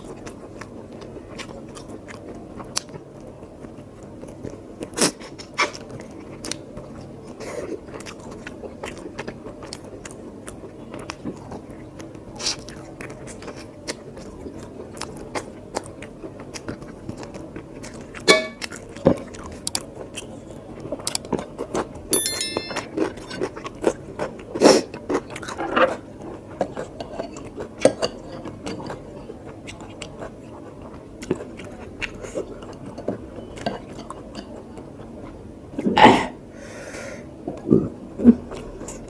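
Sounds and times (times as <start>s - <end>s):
chewing and mouth clicks: 7.9s - 21.9s, 23.1s - 35.4s.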